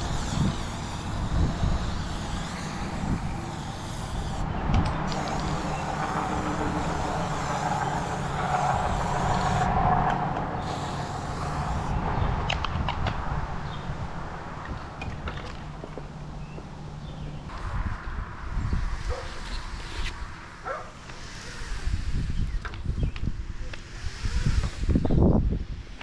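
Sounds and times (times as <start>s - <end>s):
heavy machine engine running: 0.0s - 11.9s
high whine: 0.0s - 12.3s.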